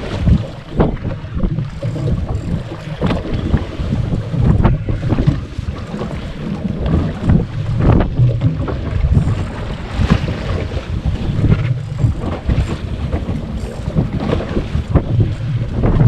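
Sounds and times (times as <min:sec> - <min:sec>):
knocks and splashes against hull: 0:00.0 - 0:16.0
low rumble: 0:00.0 - 0:16.0
wind buffeting microphone: 0:00.0 - 0:16.0.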